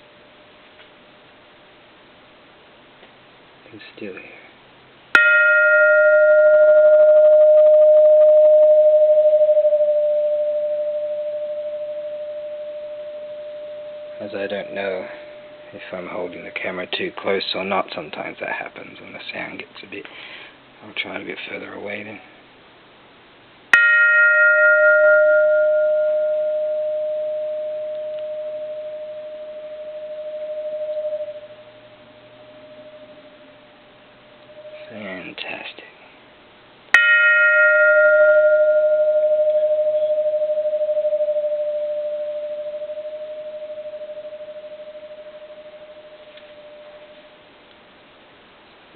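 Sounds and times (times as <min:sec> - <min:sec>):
temple bell ringing: 0:05.1 - 0:19.4, 0:23.7 - 0:33.7, 0:34.4 - 0:35.4, 0:36.9 - 0:47.4.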